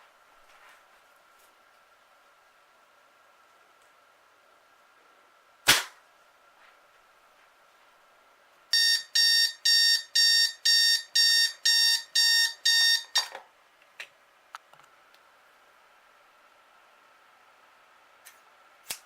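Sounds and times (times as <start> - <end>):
electronic alarm beeping: 8.7 - 13.3.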